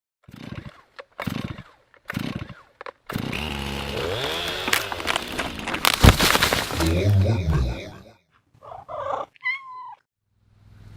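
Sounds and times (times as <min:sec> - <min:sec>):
chainsaw revving: 0:00.2 - 0:07.7
sharp cracks: 0:03.9 - 0:06.9.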